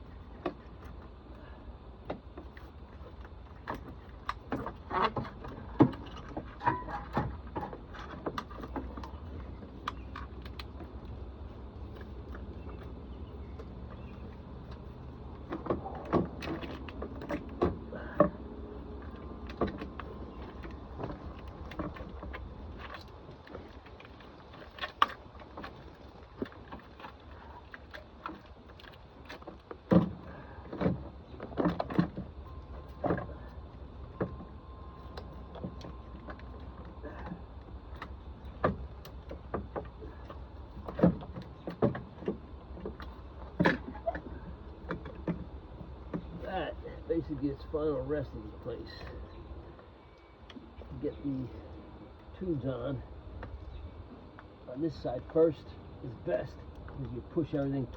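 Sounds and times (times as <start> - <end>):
steady low hum: 0.0 - 57.9.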